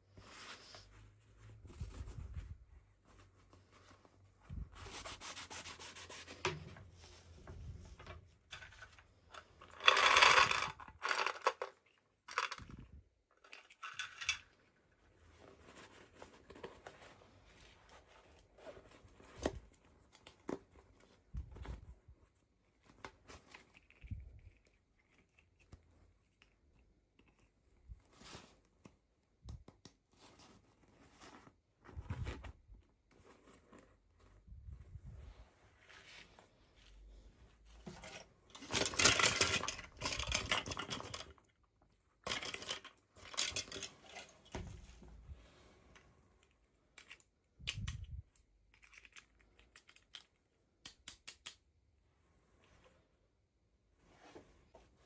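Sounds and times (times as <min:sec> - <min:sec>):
small clicks and taps: 0:47.0 - 0:51.7.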